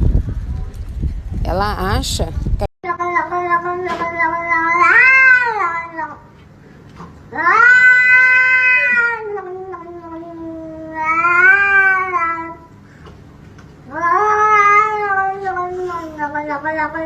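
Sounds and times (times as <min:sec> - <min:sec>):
cat yowling: 0:02.9 - 0:06.2, 0:07.3 - 0:12.7, 0:13.9 - 0:17.0.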